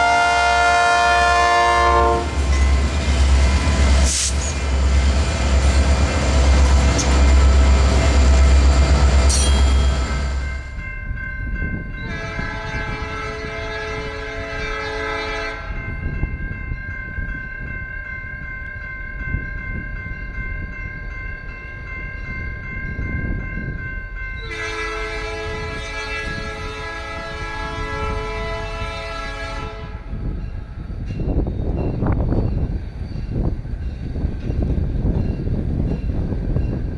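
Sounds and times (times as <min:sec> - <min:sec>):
locomotive air horn chord: 0:00.0 - 0:02.4, 0:12.1 - 0:15.8, 0:24.5 - 0:30.1
passing train rumble: 0:00.0 - 0:36.9.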